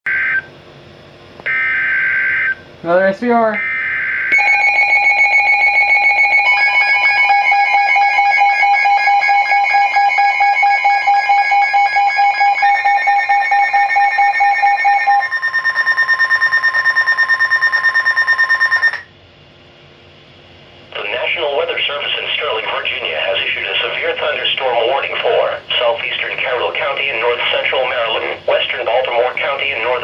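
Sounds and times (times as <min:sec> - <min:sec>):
pulsing electronic alarm tones: 0:01.5 - 0:02.6, 0:03.5 - 0:19.1.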